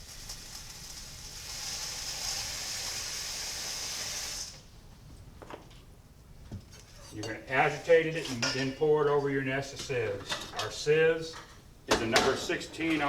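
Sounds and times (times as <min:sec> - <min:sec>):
tap water running into a pan: 0:00.0 - 0:04.7.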